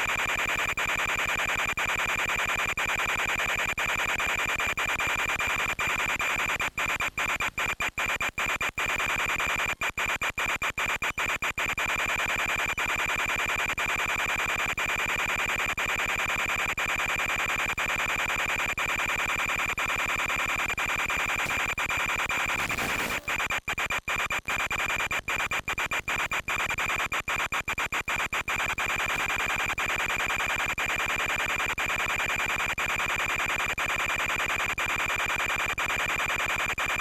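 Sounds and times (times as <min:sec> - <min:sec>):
harsh radio static: 0:00.0 - 0:37.0
high-pitched whine: 0:20.8 - 0:23.6.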